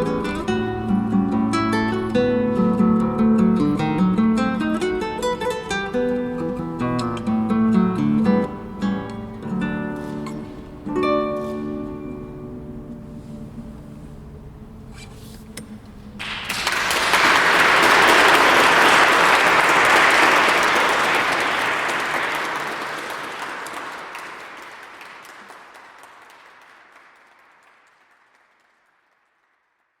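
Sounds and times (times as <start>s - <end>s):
audience applauding: 16.2s - 30.0s.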